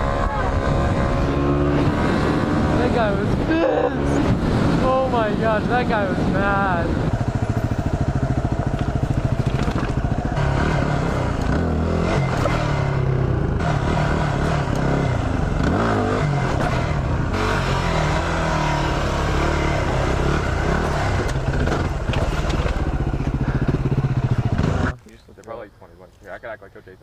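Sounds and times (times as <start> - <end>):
wind on microphone: 0.0 - 11.4
motorcycle engine running: 0.0 - 25.0.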